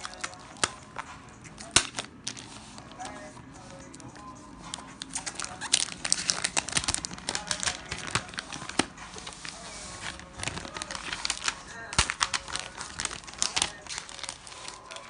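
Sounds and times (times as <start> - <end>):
packaging crinkling: 1.6 - 3.2, 4.7 - 15.0.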